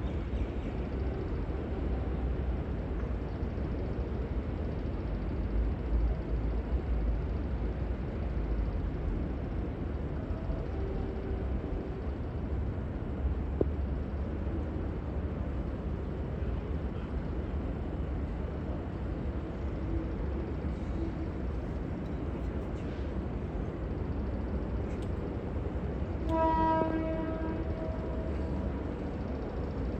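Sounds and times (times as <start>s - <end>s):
train horn blast: 26.2s - 28.7s.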